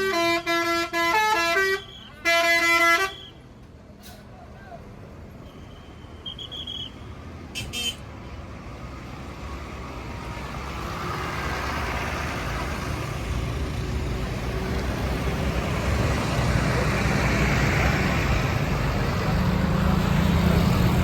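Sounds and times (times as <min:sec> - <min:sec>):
vehicle approaching on road: 0:06.5 - 0:21.0.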